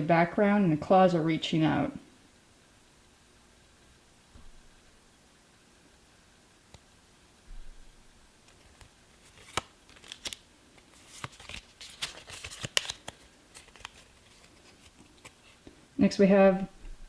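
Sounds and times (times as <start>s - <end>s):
trading cards clicking and flicking: 11.0s - 15.4s.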